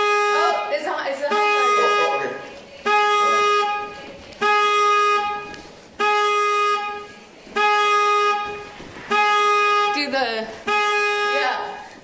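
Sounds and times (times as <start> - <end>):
electronic alert honk: 0.0 - 11.9.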